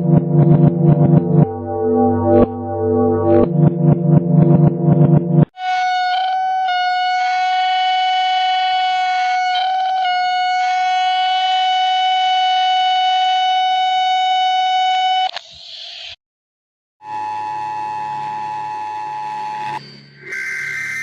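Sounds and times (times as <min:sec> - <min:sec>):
buzzy alarm tone: 0:00.0 - 0:14.9.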